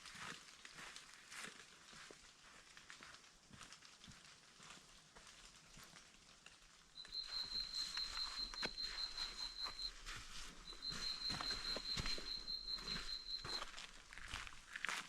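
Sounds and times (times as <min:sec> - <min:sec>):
footsteps crunching on trail: 0:07.0 - 0:15.0.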